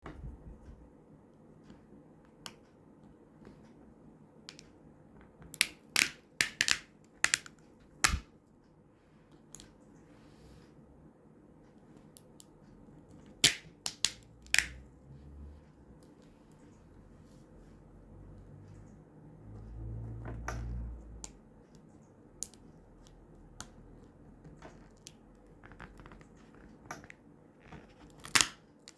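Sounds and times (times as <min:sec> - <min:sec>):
sticky stickers popping and clicking: 0:05.4 - 0:08.3, 0:13.4 - 0:14.8.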